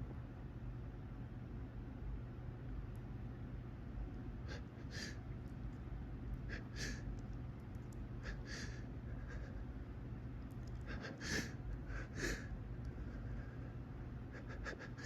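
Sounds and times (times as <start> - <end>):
person gasping quick breaths: 4.5 - 5.2, 6.5 - 7.1, 8.2 - 9.5, 10.8 - 13.7.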